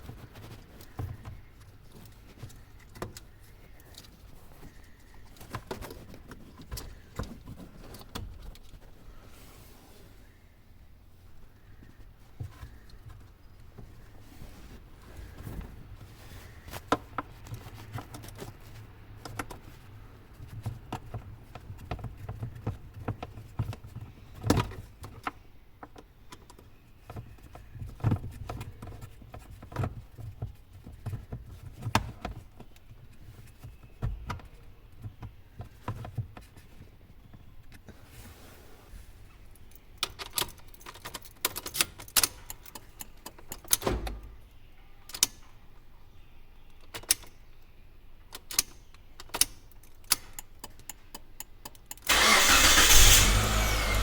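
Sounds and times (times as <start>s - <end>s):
tools and parts clicking and knocking: 40.0s - 44.2s.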